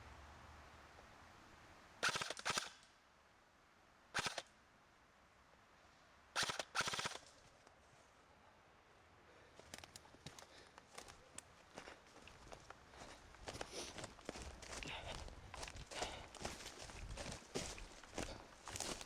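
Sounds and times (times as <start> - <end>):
airsoft guns firing bursts: 2.0 - 2.8, 6.4 - 7.2.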